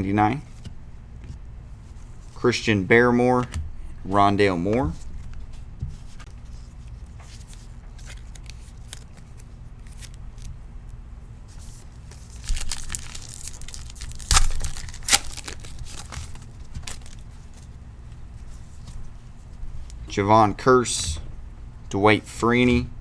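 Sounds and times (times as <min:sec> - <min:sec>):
card pack crinkling: 0:07.4 - 0:10.6, 0:11.6 - 0:17.7
card pack tearing: 0:08.0 - 0:10.5, 0:11.9 - 0:17.3.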